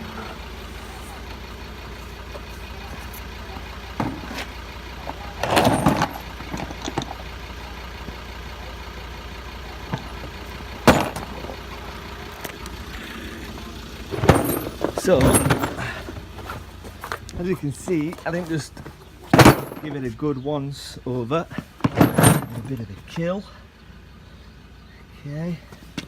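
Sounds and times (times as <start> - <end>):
vehicle engine idling: 0.0 - 26.0
knocks and clunks: 2.0 - 7.3, 9.9 - 11.6, 14.1 - 20.1, 21.5 - 23.3.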